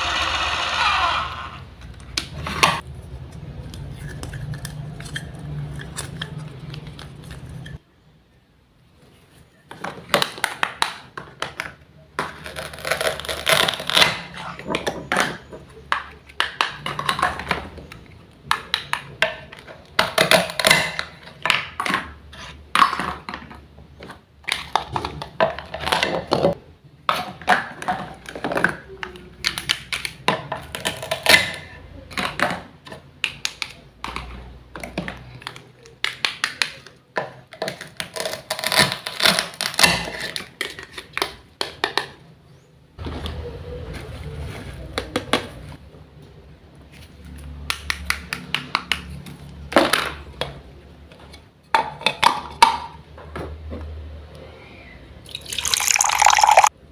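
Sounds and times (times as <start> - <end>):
small hard objects clicking and knocking: 55.3 - 56.8.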